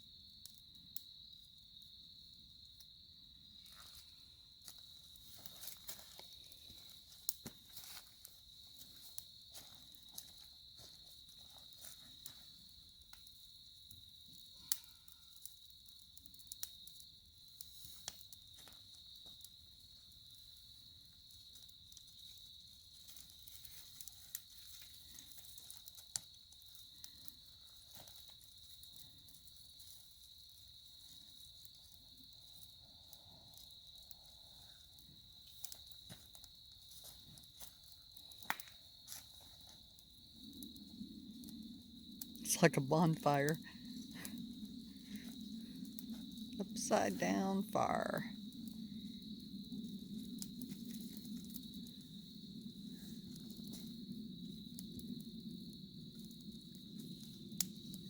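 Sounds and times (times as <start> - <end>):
campfire crackling and popping: 0.0 - 58.0
insects trilling: 0.0 - 58.0.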